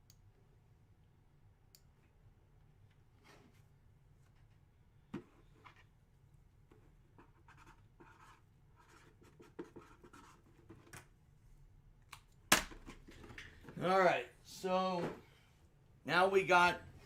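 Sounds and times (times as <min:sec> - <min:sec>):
pen scratching on paper: 0:07.2 - 0:10.8.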